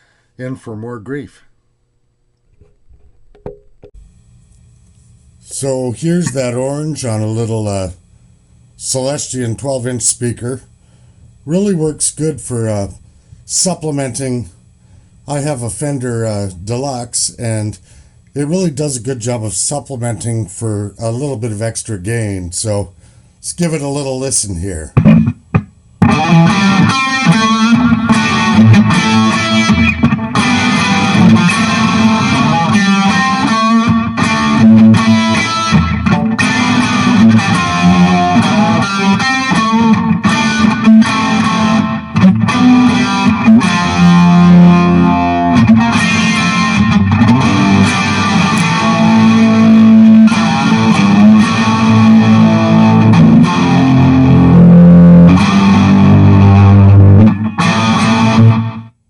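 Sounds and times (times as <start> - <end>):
overdriven electric guitar: 25.0 - 59.0.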